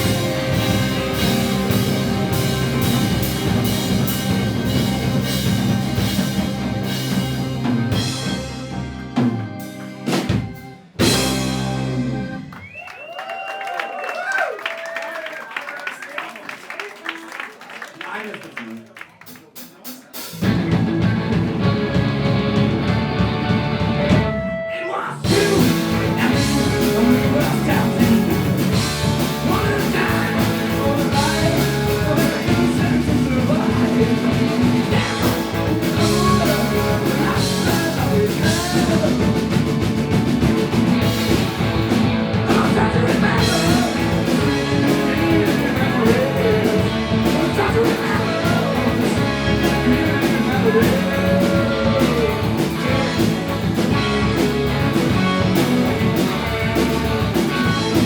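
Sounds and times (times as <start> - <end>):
rock band playing: 0.0 - 13.6, 19.2 - 58.0
person singing lead vocal: 24.6 - 39.8, 42.3 - 53.2.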